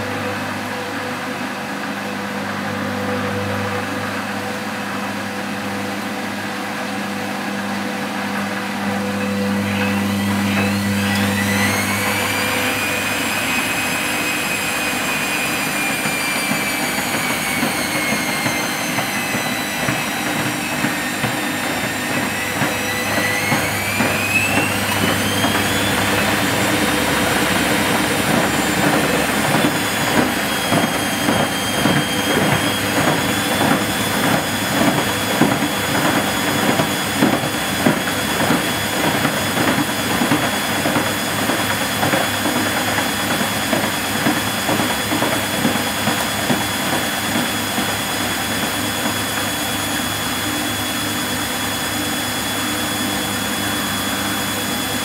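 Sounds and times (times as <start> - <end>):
washing machine motor whine: 0.0 - 55.0
washing machine drum rumble: 15.4 - 49.5.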